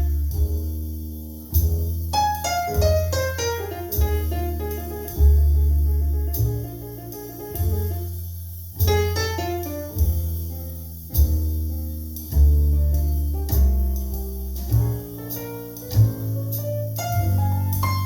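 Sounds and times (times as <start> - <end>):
light cymbal strokes: 0.0 - 18.0
piano chords and melody: 0.0 - 18.0
upright bass notes: 0.0 - 18.0.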